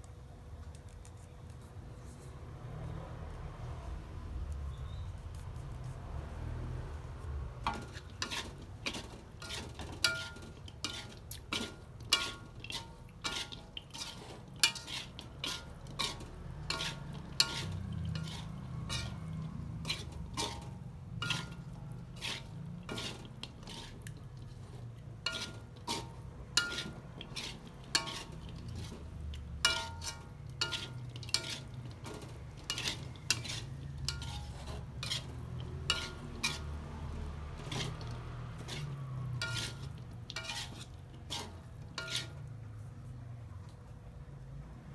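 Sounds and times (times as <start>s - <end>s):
utensil scraping a pan: 7.2s - 42.9s.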